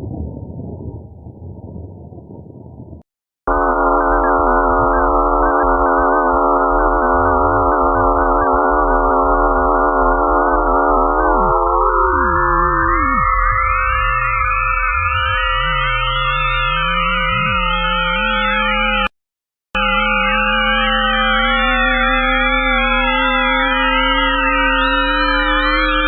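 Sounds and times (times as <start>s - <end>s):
low electronic rumble: 0.0s - 19.1s
cluster of sine-like tones: 3.5s - 19.1s, 19.8s - 26.0s.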